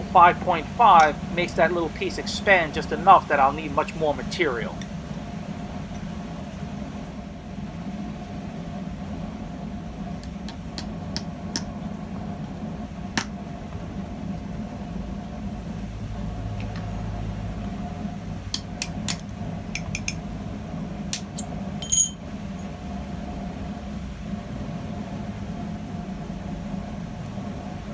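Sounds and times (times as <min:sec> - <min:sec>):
steady low hum: 0:00.0 - 0:10.2
metal tools clinking: 0:21.4 - 0:22.2
ringing metal clink: 0:21.4 - 0:22.7.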